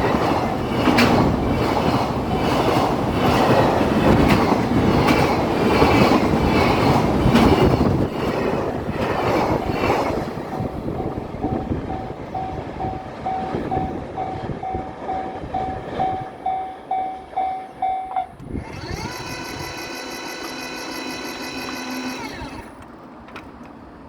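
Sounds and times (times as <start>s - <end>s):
freight train rumbling: 0.0s - 24.0s
wheels clacking over rail joints: 0.0s - 24.0s
electric motor whine: 18.4s - 22.9s.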